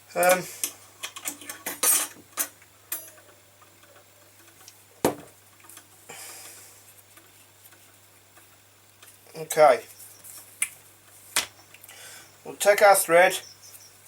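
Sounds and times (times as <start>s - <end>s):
soft rustle: 5.5s - 9.2s, 9.8s - 11.4s.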